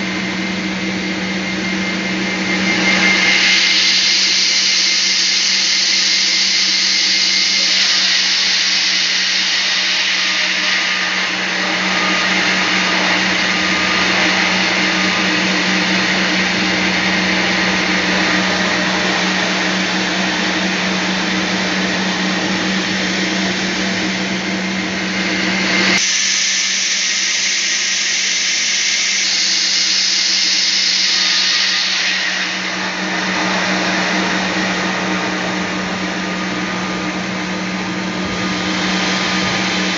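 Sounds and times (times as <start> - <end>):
saw motor hum: 0.0 - 39.9
saw blade hissing through log: 25.8 - 34.8.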